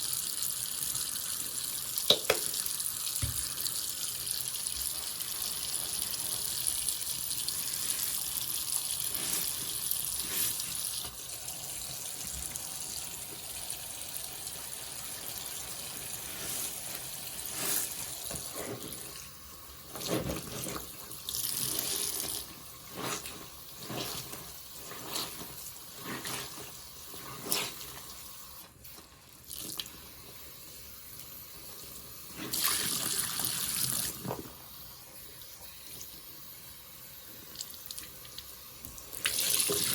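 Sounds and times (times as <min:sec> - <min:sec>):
sponge being squeezed: 0:19.9 - 0:28.1.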